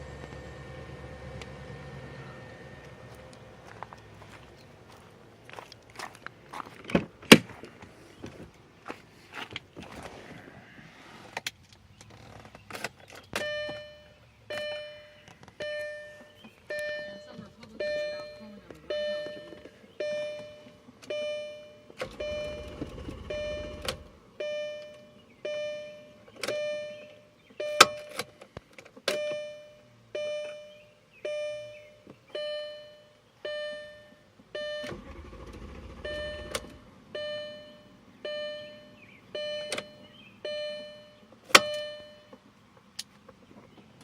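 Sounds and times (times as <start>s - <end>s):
low whir: 0.0s - 4.2s, 21.3s - 25.9s
dashboard warning chime: 1.6s - 3.3s, 13.4s - 28.2s, 29.1s - 42.4s.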